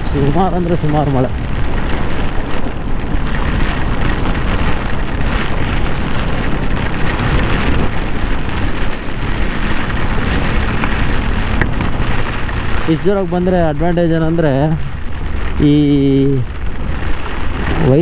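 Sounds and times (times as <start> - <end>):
heavy rain: 0.0 - 18.0
wind rushing: 0.0 - 18.0.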